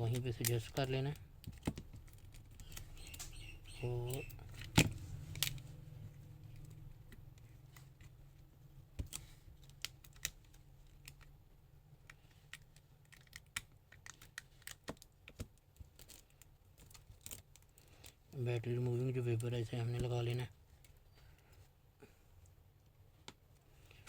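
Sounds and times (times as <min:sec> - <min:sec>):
phone parts clicking and tapping: 0:00.1 - 0:03.5.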